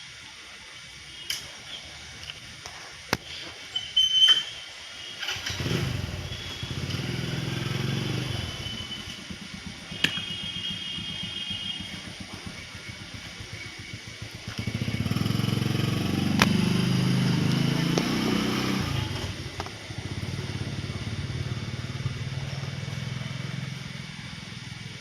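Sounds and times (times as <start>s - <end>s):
small motorcycle engine: 5.2s - 25.0s.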